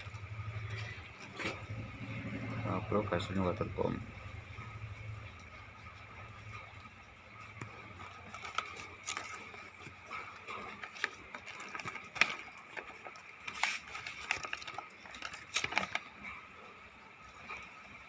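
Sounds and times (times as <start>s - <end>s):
objects being handled: 7.5s - 16.5s.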